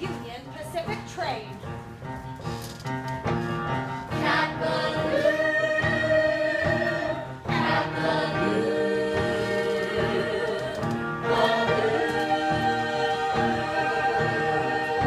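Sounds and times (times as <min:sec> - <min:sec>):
instrumental accompaniment: 0:00.0 - 0:15.0
chorus singing: 0:04.1 - 0:15.0.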